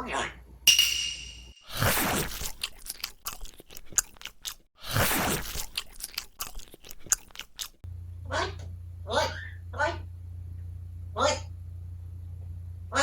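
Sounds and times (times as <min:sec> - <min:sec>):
crunching and clicking: 0:02.3 - 0:04.7, 0:05.4 - 0:07.8.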